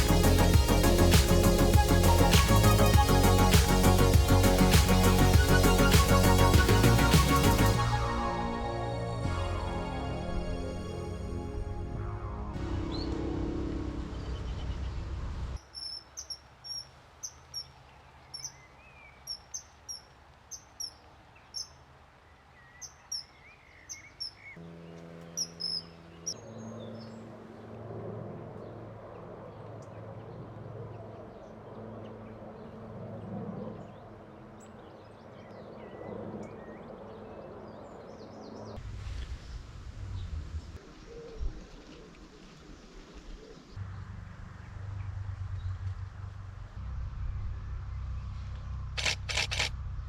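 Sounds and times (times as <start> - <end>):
music: 0.0 - 13.2
low hum: 0.0 - 15.6, 24.6 - 34.8, 38.8 - 50.0.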